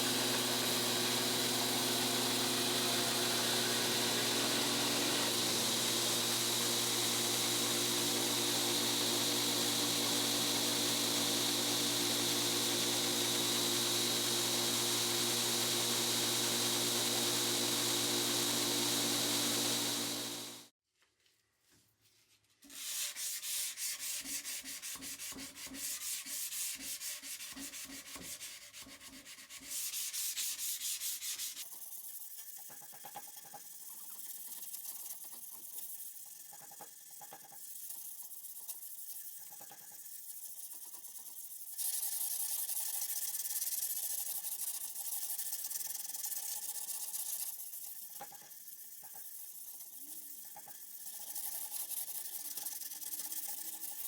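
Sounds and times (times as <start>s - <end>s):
steady machine hum: 0.0s - 20.6s.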